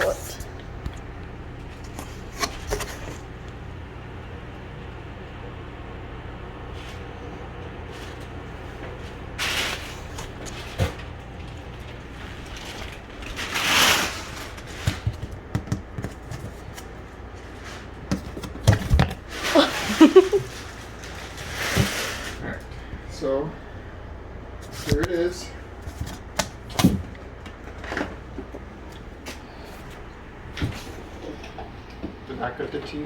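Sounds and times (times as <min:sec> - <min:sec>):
cardboard and foam sliding: 0:17.5 - 0:22.4.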